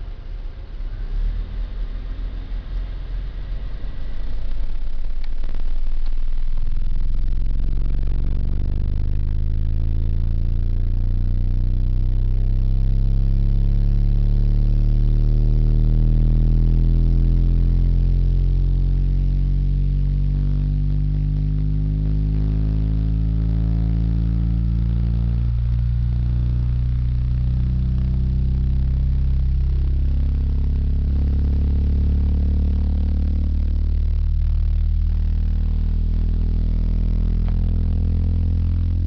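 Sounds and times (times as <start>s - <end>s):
subwoofer playing deep sliding bass: 0.0s - 39.0s.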